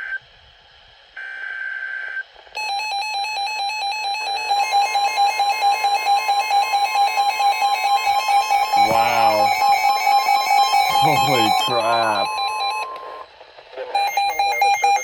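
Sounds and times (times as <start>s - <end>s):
buzzing digital data tone: 4.2s - 12.8s
pulsing electronic alert tone: 4.3s - 12.8s.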